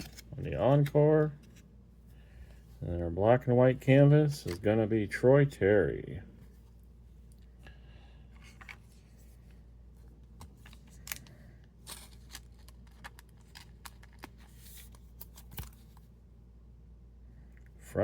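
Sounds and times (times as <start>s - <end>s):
trading cards being handled: 0.0s - 1.7s, 10.2s - 16.2s.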